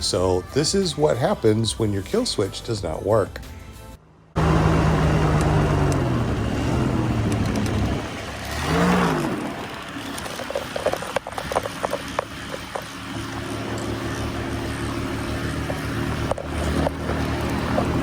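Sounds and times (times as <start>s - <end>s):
paramotor engine running: 4.3s - 18.0s.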